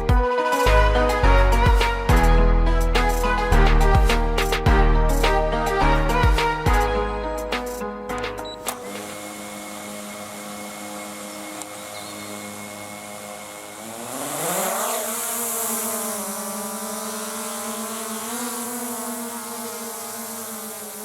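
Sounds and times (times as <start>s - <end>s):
drone motors whining: 8.1s - 21.0s.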